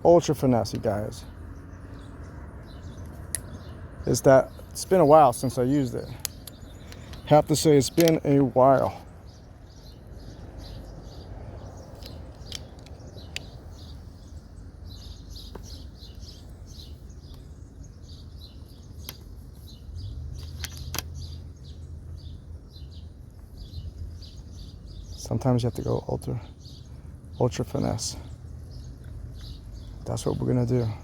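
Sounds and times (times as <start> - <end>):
small birds chirping: 0.0 - 31.0
sharp clicks: 6.0 - 8.6, 11.8 - 13.7, 20.3 - 21.4.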